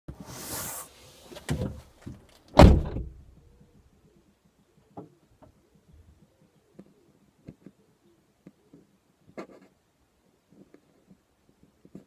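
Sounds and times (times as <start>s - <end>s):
loud thump: 2.6s - 3.3s.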